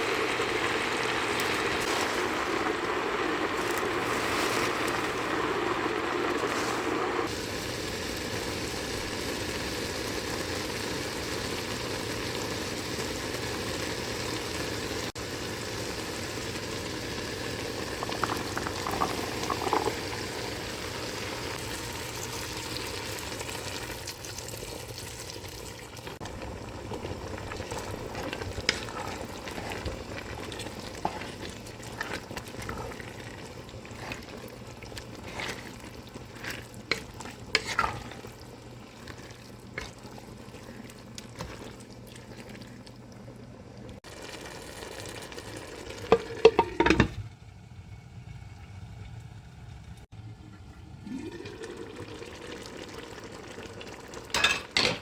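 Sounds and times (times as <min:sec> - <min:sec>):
food sizzling in a frying pan: 0:00.0 - 0:42.1, 0:44.0 - 0:47.2, 0:51.6 - 0:55.0
scrapes in a pan: 0:03.5 - 0:05.5, 0:35.2 - 0:38.3.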